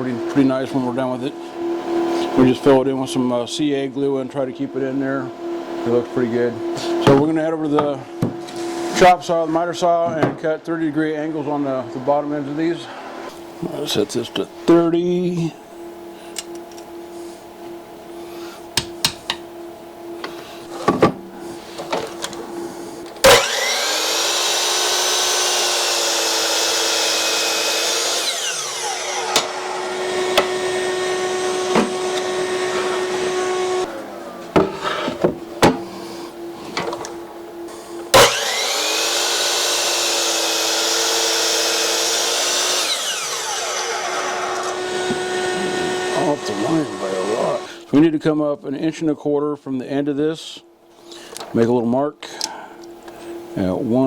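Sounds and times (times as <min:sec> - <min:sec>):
electric miter saw running: 0:23.2 - 0:35.1, 0:37.5 - 0:47.9.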